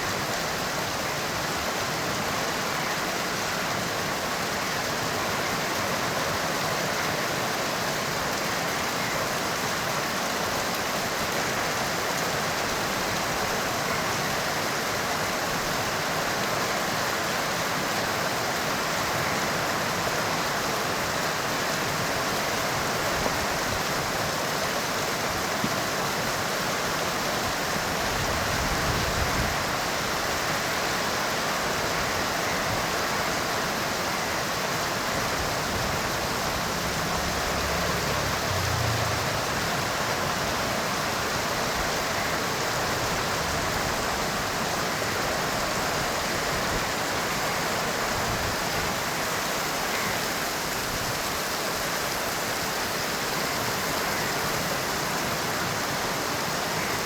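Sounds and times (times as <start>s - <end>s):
heavy rain: 0.0s - 57.0s.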